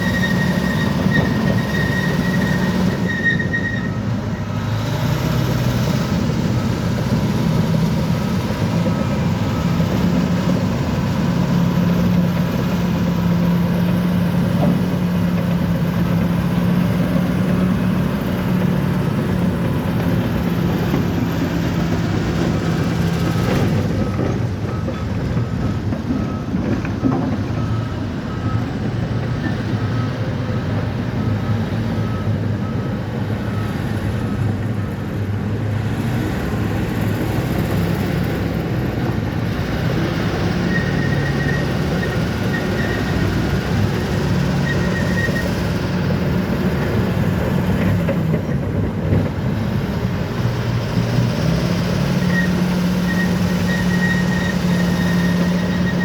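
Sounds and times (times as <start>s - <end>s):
bulldozer diesel engine running: 0.0s - 56.0s
reversing alarm beeping: 18.8s - 35.2s, 40.4s - 45.7s, 51.8s - 56.0s.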